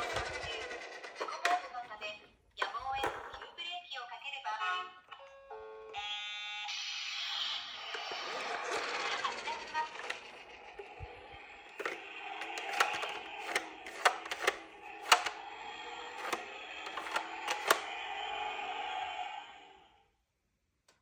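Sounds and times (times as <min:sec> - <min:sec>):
toy cars clacking: 0:00.0 - 0:03.5, 0:07.6 - 0:19.0.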